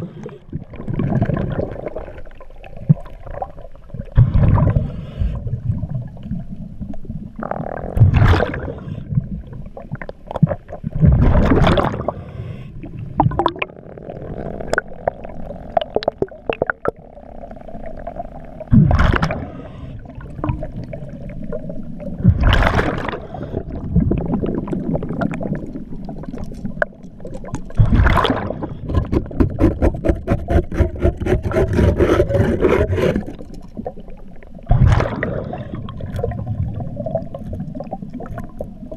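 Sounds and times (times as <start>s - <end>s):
exhaled bubbles gushing: 0.0s - 12.2s, 12.8s - 38.9s
underwater regulator breathing: 28.6s - 33.4s.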